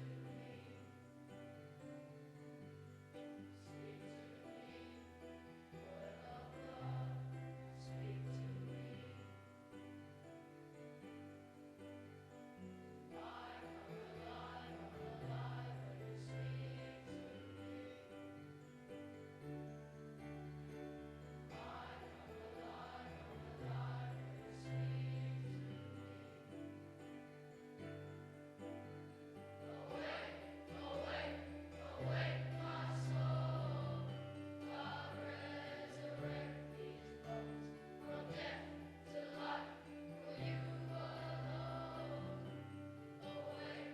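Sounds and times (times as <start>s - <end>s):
group singing a hymn: 0.0s - 0.9s, 3.6s - 9.3s, 13.1s - 18.4s, 21.5s - 26.3s, 29.7s - 43.9s.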